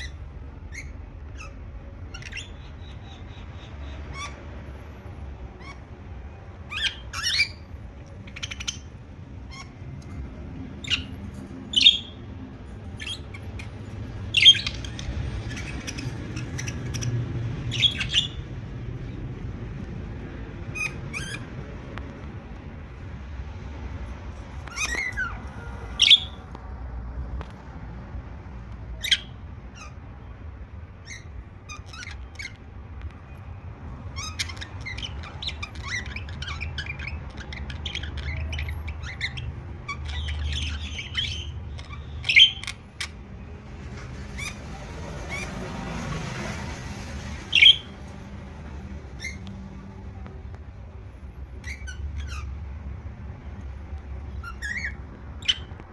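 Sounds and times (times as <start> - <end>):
loud sharp bird calls: 0.0 - 19.2, 20.6 - 21.8, 24.5 - 26.5, 31.0 - 32.7, 34.0 - 49.9, 51.5 - 52.7, 53.4 - 55.9
budgerigars chirping and squawking: 0.0 - 19.4, 20.6 - 22.3, 24.0 - 26.6, 28.9 - 33.2, 34.0 - 50.0, 50.8 - 55.9.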